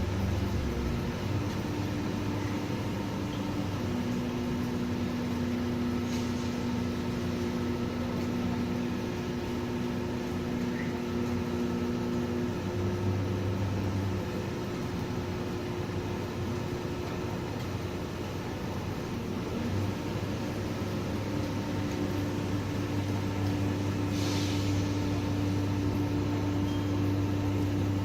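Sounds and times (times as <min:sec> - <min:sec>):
low mechanical hum: 0:00.0 - 0:28.0
steady hiss: 0:23.8 - 0:27.7.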